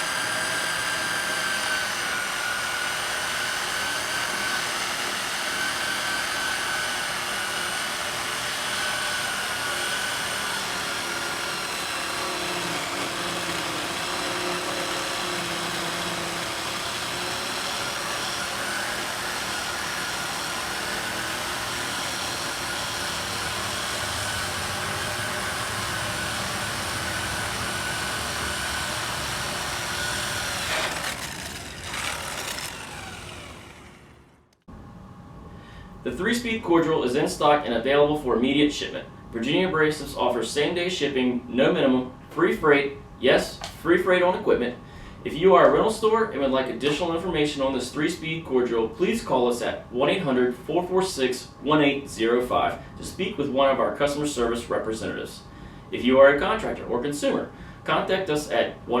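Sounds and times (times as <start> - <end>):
electric core drill whining: 0.0 - 34.6.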